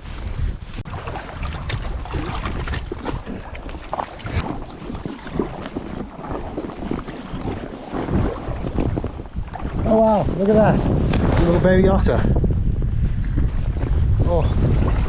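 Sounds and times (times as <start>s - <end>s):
water splashing around kayak: 0.0s - 15.0s
wind buffeting microphone: 0.0s - 15.0s.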